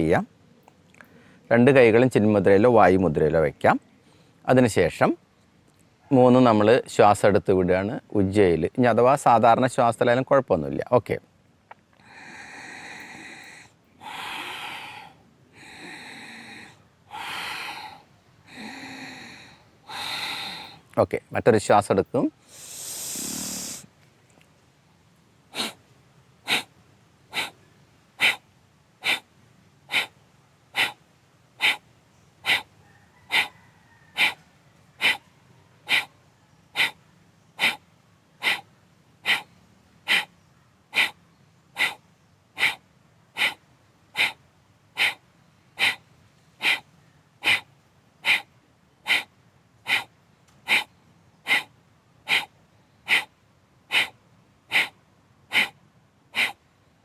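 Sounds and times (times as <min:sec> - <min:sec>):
sharp forced exhalations: 0:12.0 - 0:20.9, 0:22.4 - 0:24.0, 0:25.5 - 0:25.8, 0:26.4 - 0:26.7, 0:27.3 - 0:27.6, 0:28.2 - 0:31.0, 0:31.6 - 0:32.7, 0:33.3 - 0:34.4, 0:35.0 - 0:45.2, 0:45.8 - 0:56.6.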